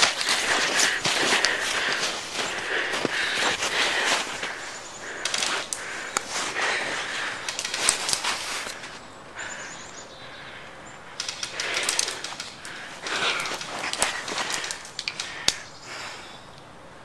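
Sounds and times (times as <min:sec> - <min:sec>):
rustling and crackling brush: 0:00.0 - 0:09.0, 0:11.2 - 0:15.6.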